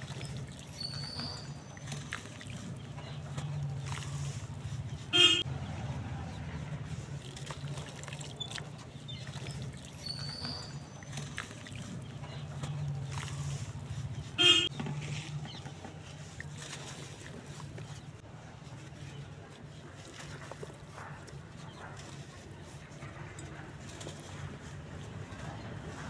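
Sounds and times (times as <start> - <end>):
short horn toots: 5.1 - 5.4, 14.4 - 14.7.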